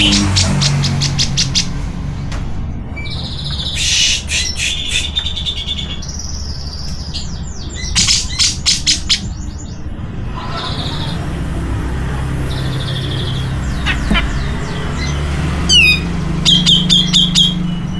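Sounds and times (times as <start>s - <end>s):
bird singing: 0.0s - 1.8s, 3.0s - 10.0s, 12.2s - 17.9s
steady low hum: 11.2s - 16.9s.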